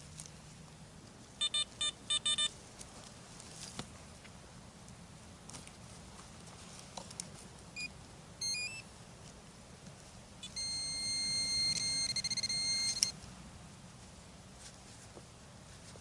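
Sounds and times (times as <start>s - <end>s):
metal detector beeps: 1.4s - 2.5s, 7.8s - 8.9s, 10.4s - 13.2s
metal detector steady high tone: 1.4s - 2.5s, 7.8s - 8.9s, 10.4s - 13.2s.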